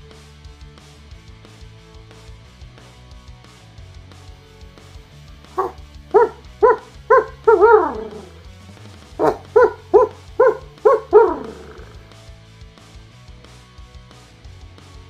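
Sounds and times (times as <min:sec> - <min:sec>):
guitar music: 0:05.4 - 0:12.2
man making barking yip calls: 0:05.6 - 0:08.4, 0:09.2 - 0:12.0.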